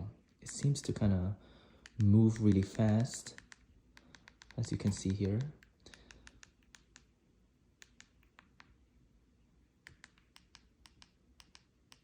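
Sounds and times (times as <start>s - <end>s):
remote button clicks: 1.8s - 7.1s, 7.8s - 8.8s, 9.8s - 12.0s.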